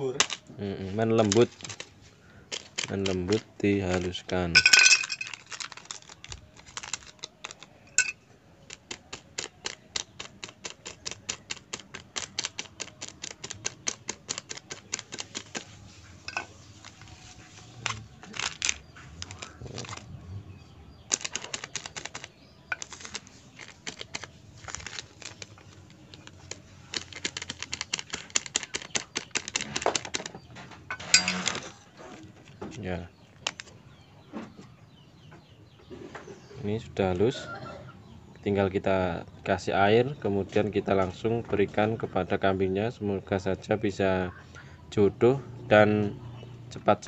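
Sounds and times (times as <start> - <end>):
tablet being crushed by tapping: 2.5 - 15.7, 21.1 - 30.3.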